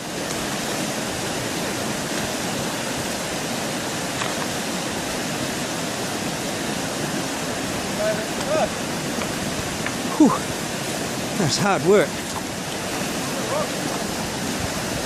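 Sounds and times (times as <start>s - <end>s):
river water rushing over stones: 0.0s - 15.0s.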